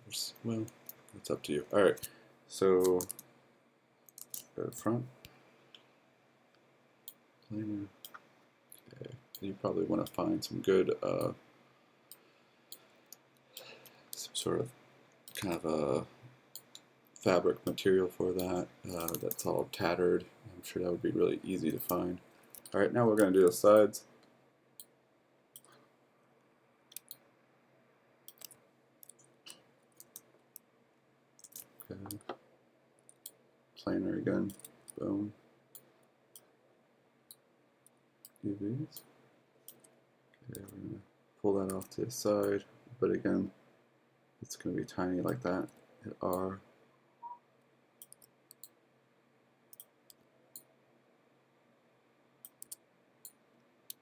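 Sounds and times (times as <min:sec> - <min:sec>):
faint room hum: 0:00.0 - 0:54.0
computer mouse clicks: 0:21.7 - 0:23.3, 0:25.6 - 0:25.8, 0:26.9 - 0:27.2, 0:28.3 - 0:30.3, 0:48.0 - 0:48.8, 0:52.4 - 0:54.0
mouse and keyboard clicks: 0:26.9 - 0:27.2, 0:28.3 - 0:30.3.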